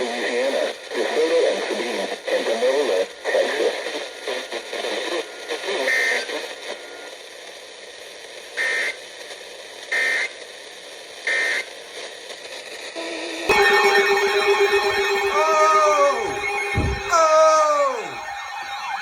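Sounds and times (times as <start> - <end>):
radio broadcast voice: 0.0 - 6.8, 14.3 - 18.4
radio hiss: 0.0 - 18.8.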